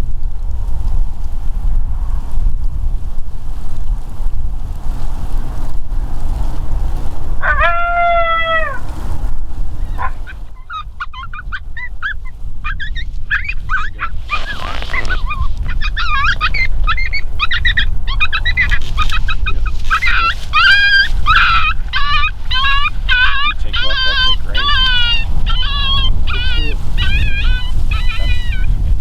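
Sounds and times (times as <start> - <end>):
wind rumble on microphone: 0.0 - 29.0
coyote howling: 7.4 - 8.9, 9.8 - 29.0
coyotes yipping: 7.4 - 8.9, 9.7 - 29.0.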